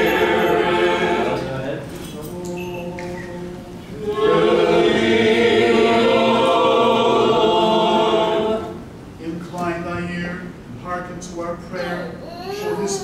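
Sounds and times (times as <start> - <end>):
choir singing in harmony: 0.0 - 1.8, 2.5 - 9.0.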